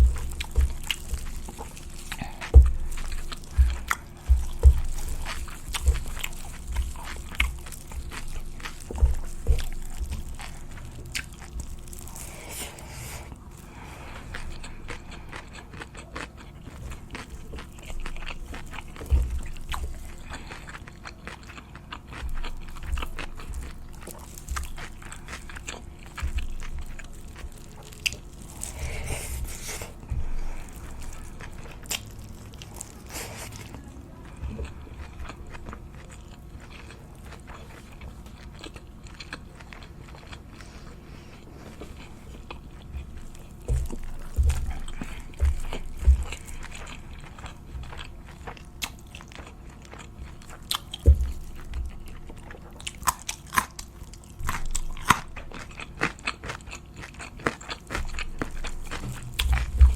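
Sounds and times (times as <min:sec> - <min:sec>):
chewing crunchy food: 0:00.0 - 0:59.9.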